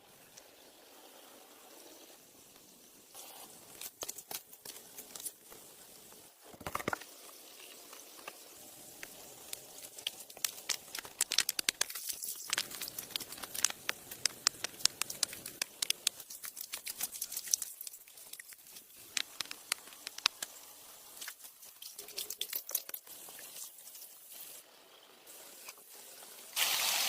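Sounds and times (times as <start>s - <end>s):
crackling and clicking: 7.8s - 20.6s.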